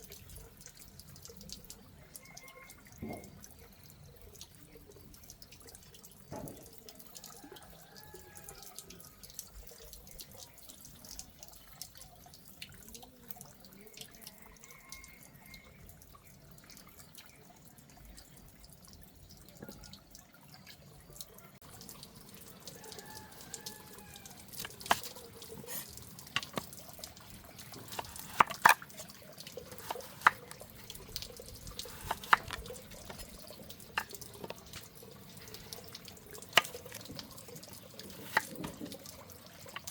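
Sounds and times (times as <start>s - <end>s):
water running and dripping: 0.0s - 39.9s
sharp splashes and clinks: 20.6s - 39.9s.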